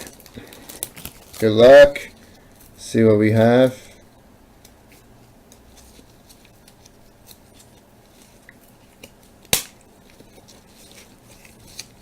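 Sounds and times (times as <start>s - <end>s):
card pack clicks and rustles: 0.0s - 1.8s, 5.5s - 12.0s.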